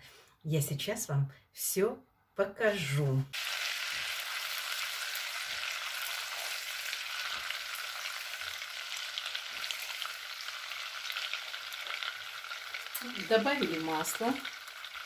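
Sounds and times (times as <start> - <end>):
butter sizzling in a pan: 3.4 - 15.0.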